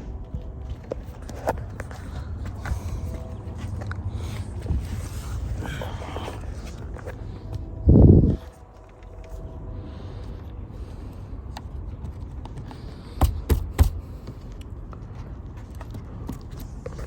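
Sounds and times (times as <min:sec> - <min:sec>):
low rumble: 0:00.0 - 0:12.0.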